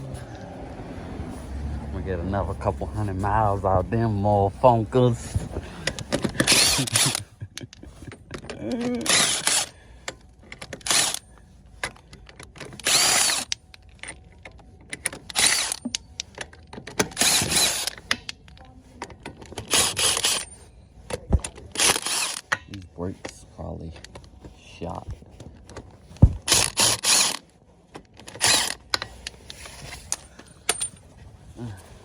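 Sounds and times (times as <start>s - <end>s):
handheld power tool bursts: 6.2s - 7.2s, 9.1s - 9.7s, 10.8s - 11.2s, 12.7s - 13.6s, 15.3s - 15.9s, 17.0s - 18.1s, 19.6s - 20.5s, 21.8s - 22.5s, 26.2s - 27.4s, 28.2s - 29.1s.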